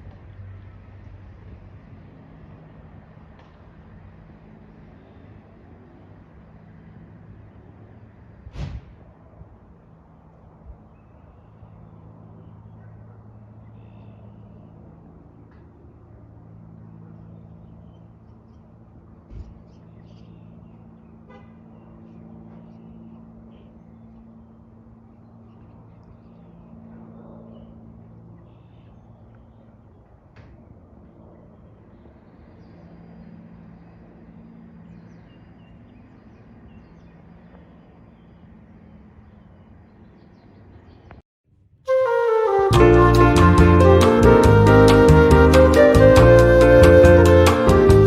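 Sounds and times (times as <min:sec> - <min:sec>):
propeller aircraft droning overhead: 0:00.0 - 0:41.2, 0:41.9 - 0:48.0
low engine drone: 0:41.9 - 0:48.0.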